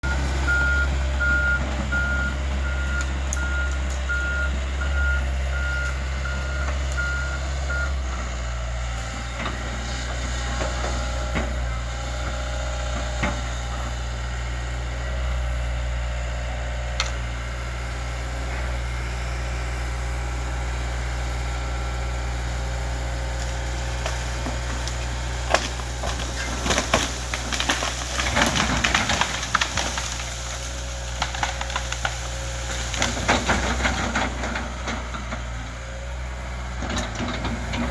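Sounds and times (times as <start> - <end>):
backup alarm beeping: 0.0 - 7.9
excavator engine under load: 0.0 - 37.9
wood cracking and splintering: 23.3 - 35.5.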